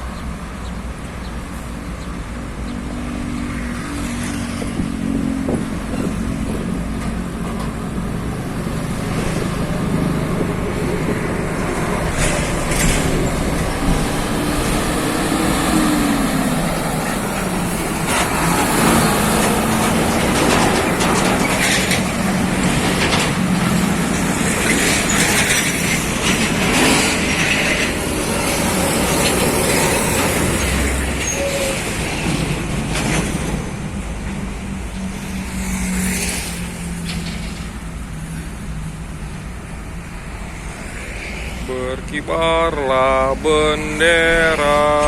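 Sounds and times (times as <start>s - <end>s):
diesel truck engines under load: 0.0s - 45.0s
tyre and road noise: 0.0s - 45.0s.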